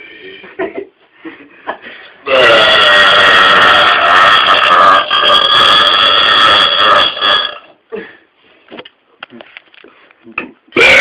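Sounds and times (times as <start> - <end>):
man belching loudly: 2.3 - 7.6, 10.8 - 11.0.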